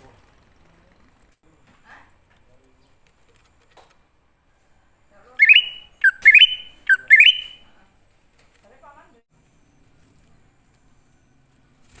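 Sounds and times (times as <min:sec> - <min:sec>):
bird whistled calls: 0:05.4 - 0:07.6.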